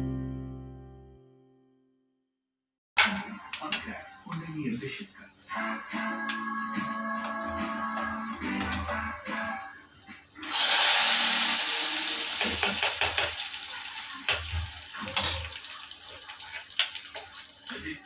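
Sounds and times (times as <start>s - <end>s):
metal utensil clinking on pan: 3.0s - 4.0s, 12.4s - 13.4s
food sizzling in hot oil: 3.2s - 18.0s.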